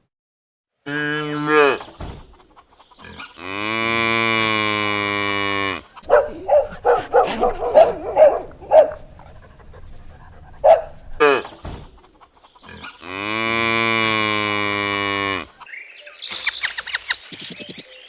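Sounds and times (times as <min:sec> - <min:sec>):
cow mooing: 0:03.4 - 0:06.6, 0:12.7 - 0:15.6
dog barking: 0:06.0 - 0:09.1, 0:10.6 - 0:11.0.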